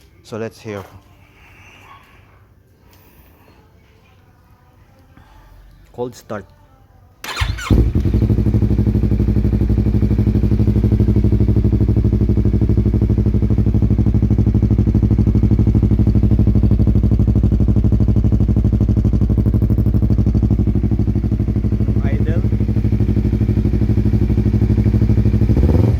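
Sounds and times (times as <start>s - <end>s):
motorcycle engine starting and idling: 7.2s - 25.9s.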